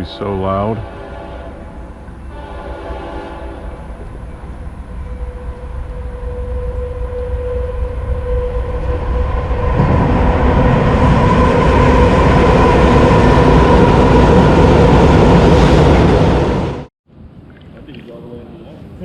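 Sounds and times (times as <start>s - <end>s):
train rumbling overhead: 0.0s - 16.9s
steady pitched tone: 4.6s - 15.6s.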